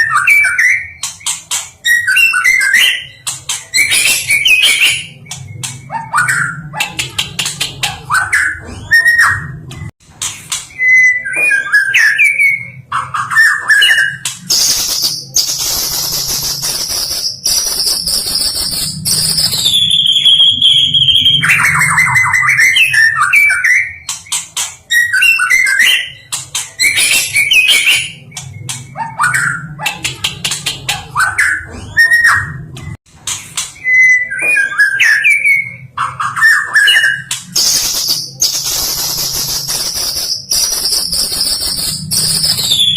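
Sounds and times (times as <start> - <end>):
bird singing whistled phrases: 33.8 - 42.9.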